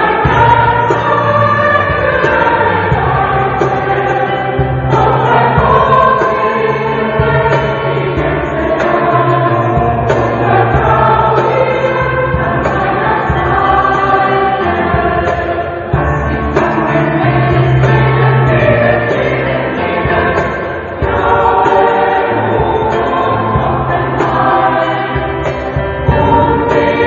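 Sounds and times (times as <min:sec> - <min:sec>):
mixed choir singing: 0:00.0 - 0:27.0.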